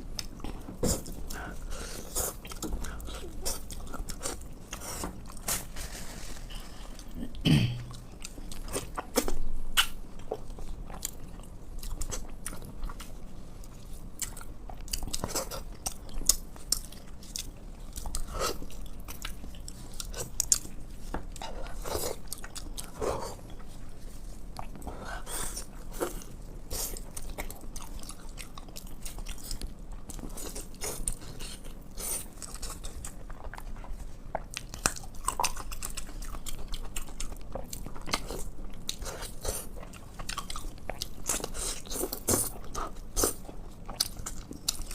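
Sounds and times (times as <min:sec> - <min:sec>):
person chewing and biting: 0:24.6 - 0:44.9.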